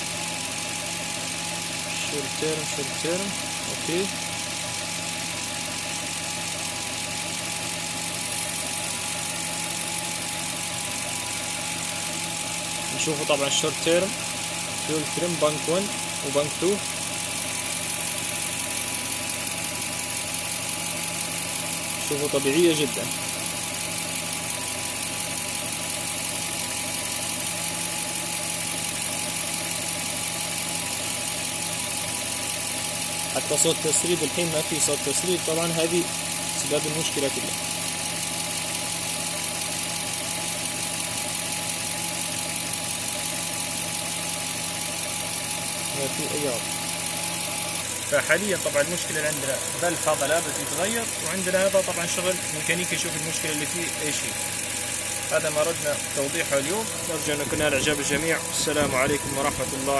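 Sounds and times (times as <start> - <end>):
truck engine idling: 0.0 - 59.9.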